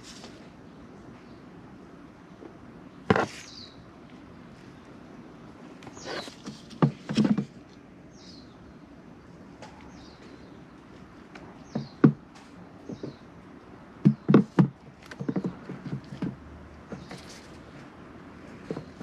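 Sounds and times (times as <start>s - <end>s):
sharp knocks and clatter: 6.4s - 7.6s, 11.6s - 13.2s, 14.0s - 17.5s.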